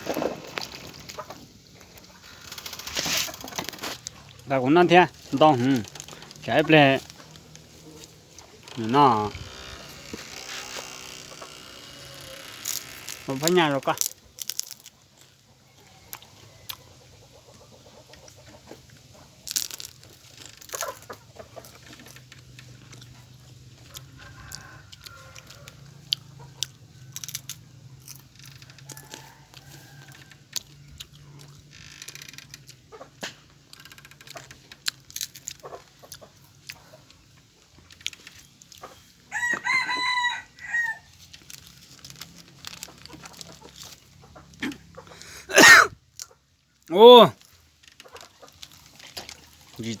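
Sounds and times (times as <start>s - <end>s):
chickens clucking: 15.2s - 19.5s, 20.1s - 27.1s, 35.5s - 40.3s, 42.5s - 45.5s.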